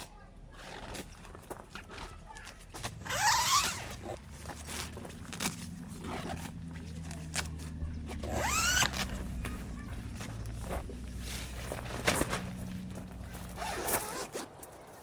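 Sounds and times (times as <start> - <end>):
zipper pulled: 2.8 - 6.6, 7.3 - 10.8, 12.0 - 14.6.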